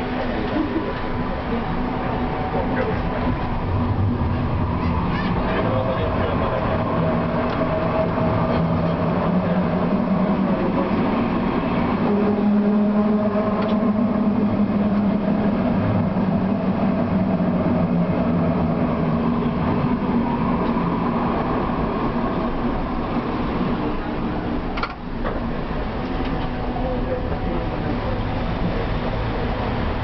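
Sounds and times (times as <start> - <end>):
tram motor hum: 0.0 - 30.0
tram rolling rumble: 0.0 - 30.0
faint clicks from rails: 13.5 - 13.9, 24.7 - 26.7.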